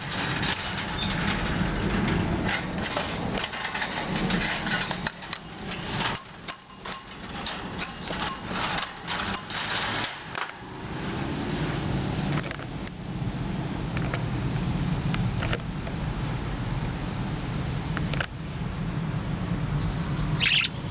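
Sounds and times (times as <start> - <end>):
wire cage clicking and rattling: 0.0 - 10.7.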